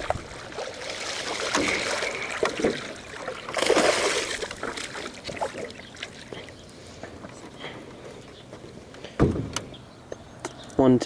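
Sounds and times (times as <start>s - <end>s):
water splashing beside boat: 0.0s - 7.4s.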